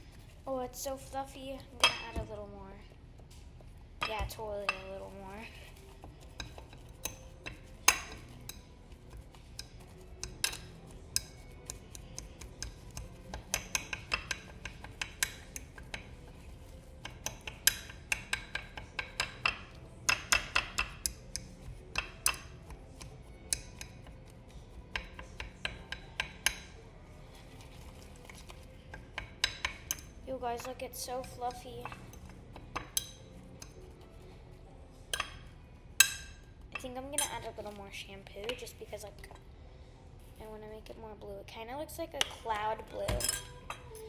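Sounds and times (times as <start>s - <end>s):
utensil clinking against bowl: 5.7s - 34.0s, 34.9s - 37.8s, 42.2s - 44.0s.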